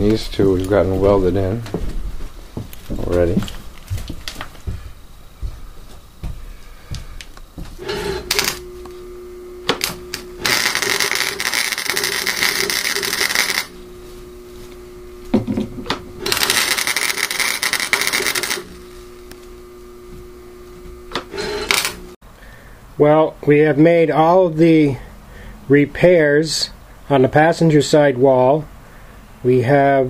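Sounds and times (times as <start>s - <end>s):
welder humming: 0.0s - 22.2s
weld arc crackling: 7.2s - 22.2s.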